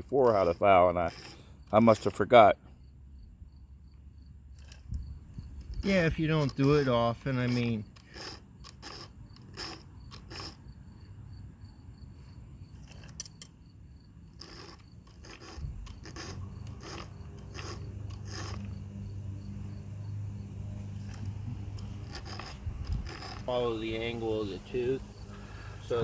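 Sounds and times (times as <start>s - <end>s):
file rasping on chainsaw chain: 0.0s - 2.5s, 4.5s - 10.8s, 14.2s - 25.3s.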